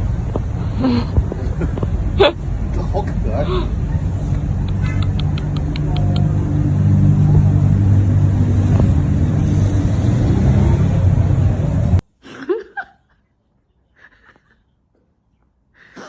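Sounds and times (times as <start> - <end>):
low rumble with hum: 0.0 - 12.0
quiet call gliding in pitch: 3.8 - 9.6.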